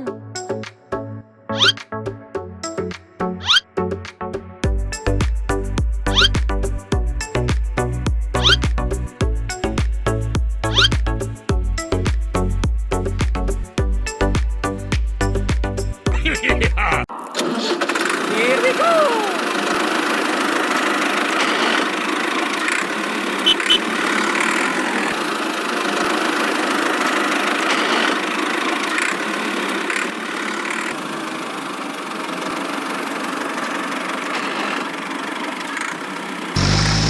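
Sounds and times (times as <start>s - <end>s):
engine running steadily: 36.5s - 37.0s.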